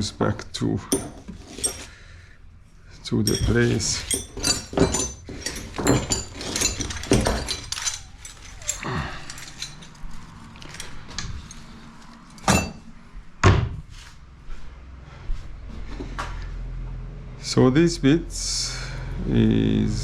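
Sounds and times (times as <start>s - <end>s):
metal parts clinking: 0.9s - 2.0s, 2.9s - 13.0s.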